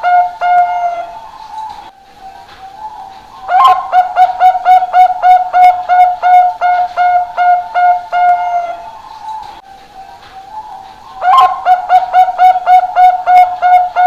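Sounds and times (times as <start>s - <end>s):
dove cooing: 0.0s - 9.5s, 10.1s - 14.0s.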